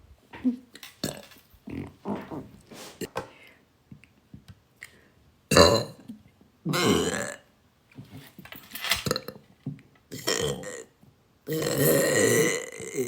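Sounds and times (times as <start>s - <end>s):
woman burping: 0.4s - 2.4s, 6.7s - 7.4s, 10.1s - 10.9s, 11.5s - 13.0s.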